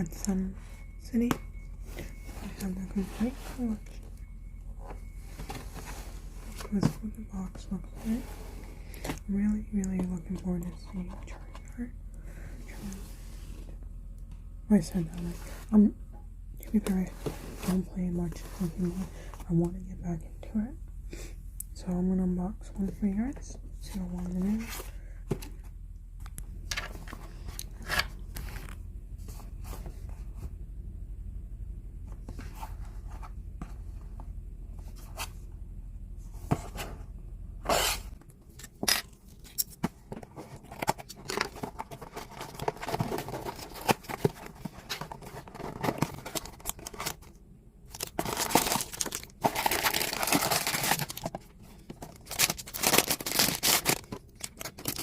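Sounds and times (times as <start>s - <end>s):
low steady hum: 0.0s - 55.0s
paper and plastic tearing: 40.6s - 47.3s, 47.9s - 51.4s, 52.0s - 55.0s.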